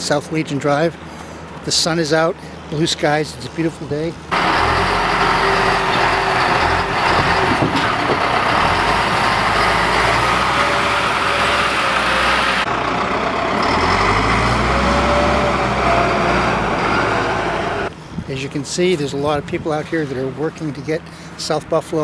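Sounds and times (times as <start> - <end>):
heavy truck engine running: 3.8 - 18.1.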